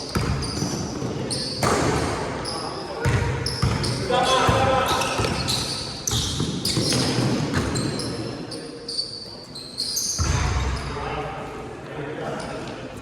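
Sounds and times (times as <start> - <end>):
sneakers squeaking: 0.0 - 11.0
basketball bouncing: 0.1 - 0.4, 3.0 - 3.9.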